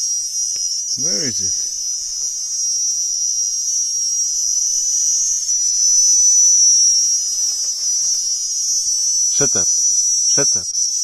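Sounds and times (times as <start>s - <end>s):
cicadas buzzing: 0.0s - 11.0s.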